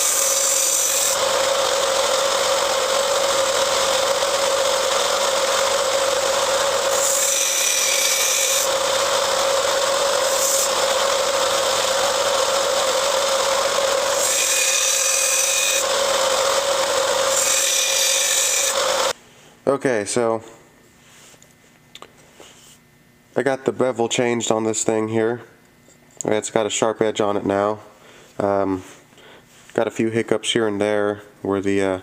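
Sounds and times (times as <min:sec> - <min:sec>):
knife blade grinding on belt: 0:00.0 - 0:08.8
belt sander whining: 0:00.0 - 0:19.2.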